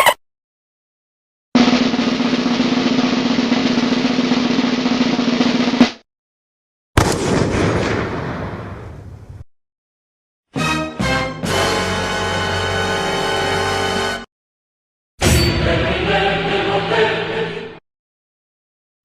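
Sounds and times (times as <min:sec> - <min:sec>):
snare drum roll: 0:01.6 - 0:06.0
sound effect: 0:15.2 - 0:15.9.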